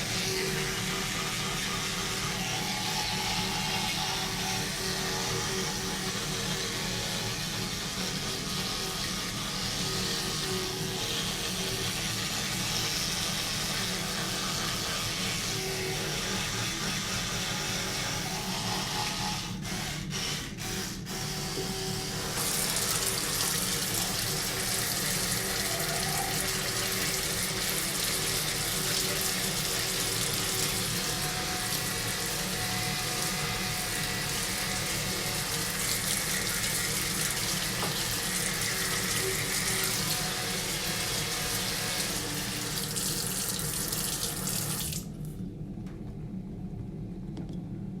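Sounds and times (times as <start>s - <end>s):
electric toothbrush buzzing: 0.0s - 45.2s
tap running into a sink: 35.6s - 40.1s.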